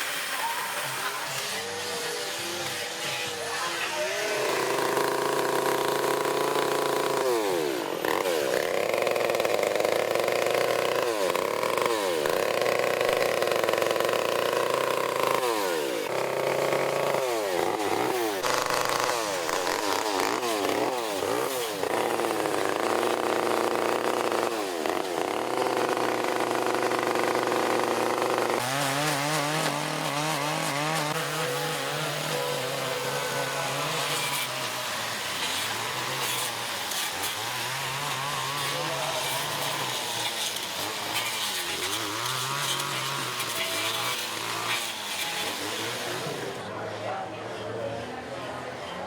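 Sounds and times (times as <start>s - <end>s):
chainsaws revving while cutting wood: 0.0s - 46.7s
lower-pitched saw rising and falling: 28.7s - 40.4s.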